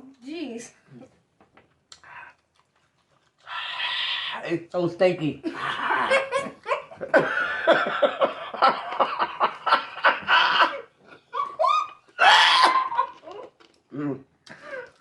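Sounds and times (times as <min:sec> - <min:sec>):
people laughing hard: 0:05.4 - 0:13.3.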